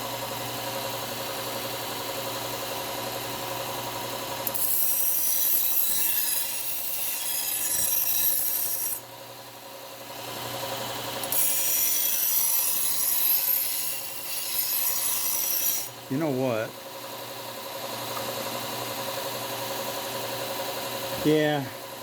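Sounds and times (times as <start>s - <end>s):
knife blade grinding on belt: 4.4s - 9.0s, 11.2s - 16.0s.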